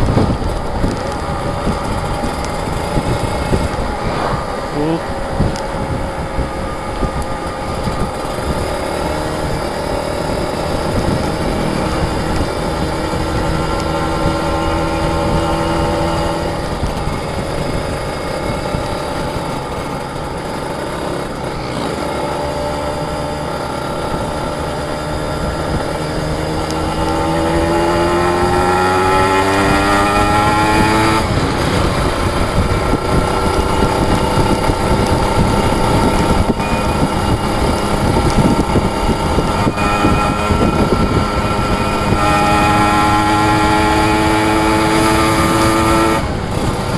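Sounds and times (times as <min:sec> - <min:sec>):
two-stroke motorcycle engine: 0:00.0 - 0:46.9
wind rush on microphone: 0:00.0 - 0:46.9.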